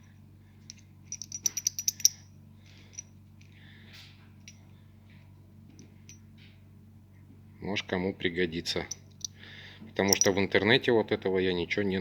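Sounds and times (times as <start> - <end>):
faint steady hum: 0.0 - 12.0
metallic clicks and rattles: 0.7 - 2.2, 10.1 - 10.4.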